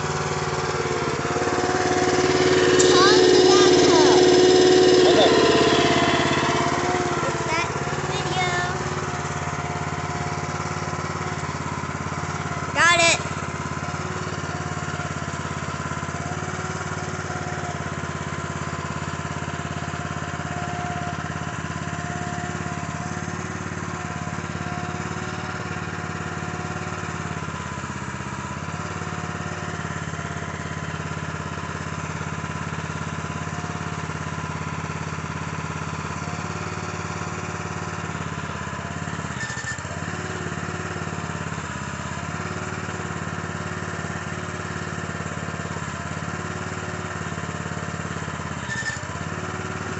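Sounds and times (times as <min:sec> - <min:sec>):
hydraulic whine: 0:00.0 - 0:32.2, 0:42.3 - 0:49.9
small gasoline engine running: 0:00.0 - 0:49.9.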